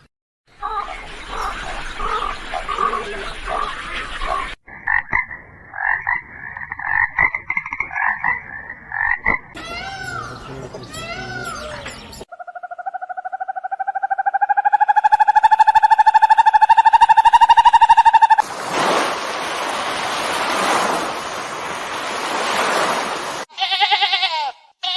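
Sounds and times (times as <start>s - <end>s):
frog croaks: 4.8s - 9.6s, 12.3s - 18.4s
frog chirps: 12.3s - 18.4s
frog pulsed trill: 12.3s - 18.4s.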